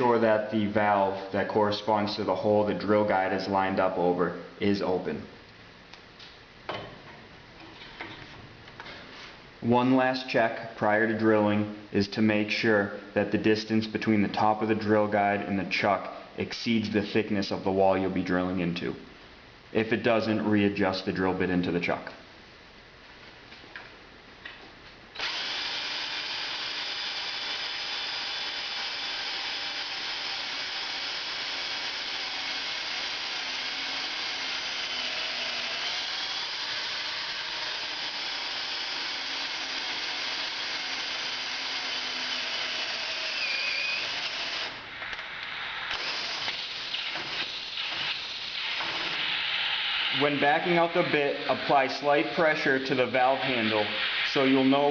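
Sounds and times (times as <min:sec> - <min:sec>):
power drill whining: 0:25.2 - 0:44.8, 0:45.9 - 0:49.1.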